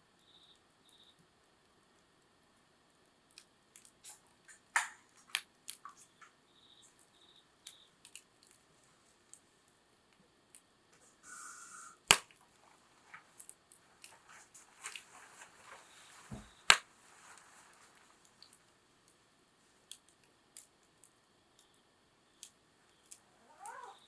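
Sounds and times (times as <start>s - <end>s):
burning wood crackling: 1.4s - 24.0s
fire hiss: 11.0s - 12.3s.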